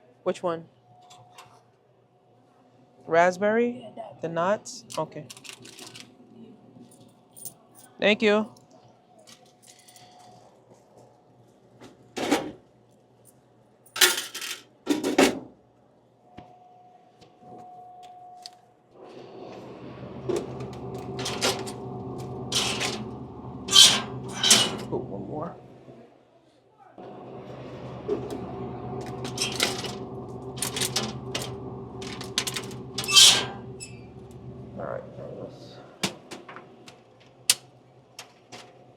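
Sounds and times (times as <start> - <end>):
coins clinking and rattling: 5.3 - 6.1, 13.9 - 14.7, 29.2 - 30.0
steady low hum: 19.0 - 26.1, 27.0 - 36.8
vending machine clicks and rattles: 20.0 - 25.0, 27.8 - 34.6.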